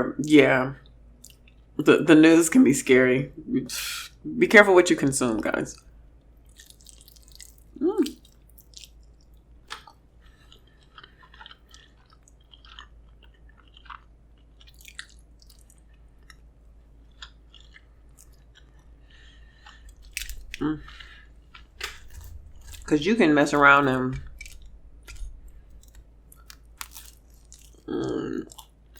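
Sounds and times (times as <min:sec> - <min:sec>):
chewing with mouth smacks: 0:00.8 - 0:01.8, 0:05.8 - 0:28.9
hum-like voiced sound: 0:27.8 - 0:28.6.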